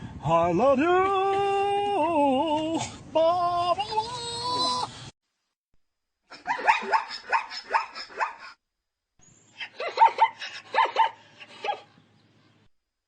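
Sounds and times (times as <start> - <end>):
zebra yelping barks: 6.4 - 8.5.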